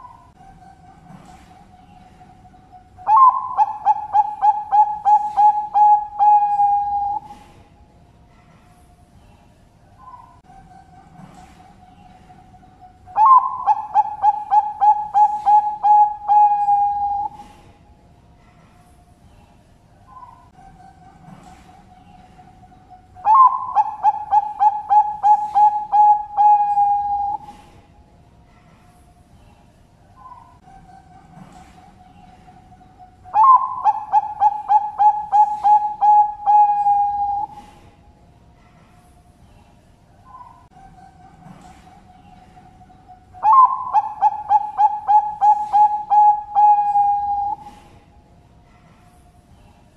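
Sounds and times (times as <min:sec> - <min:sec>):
dove cooing: 0:00.0 - 0:07.6, 0:10.0 - 0:17.6, 0:20.1 - 0:27.8, 0:30.2 - 0:38.0, 0:40.3 - 0:48.0.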